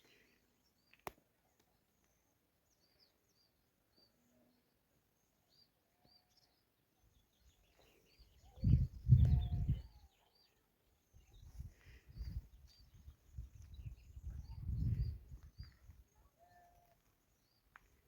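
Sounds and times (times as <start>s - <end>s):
small bird chirping: 5.5s - 17.8s.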